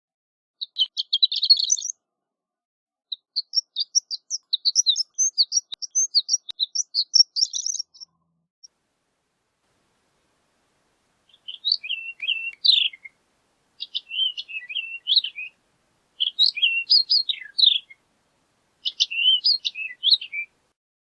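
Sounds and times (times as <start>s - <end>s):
lark singing high tinkling notes: 11.3s - 13.1s, 13.8s - 15.6s, 16.2s - 18.0s, 18.8s - 20.6s.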